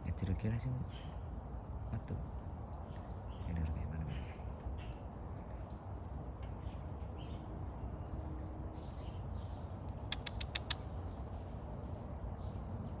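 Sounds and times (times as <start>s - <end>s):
bird chirping: 6.6s - 12.9s.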